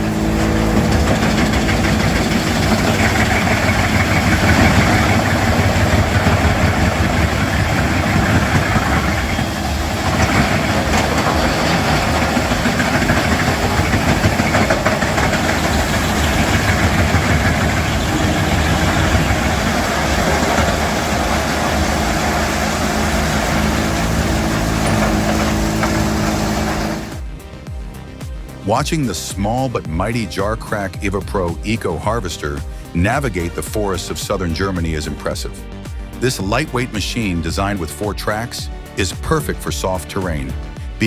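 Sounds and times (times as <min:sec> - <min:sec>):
wood chipper engine running: 0:00.0 - 0:27.4.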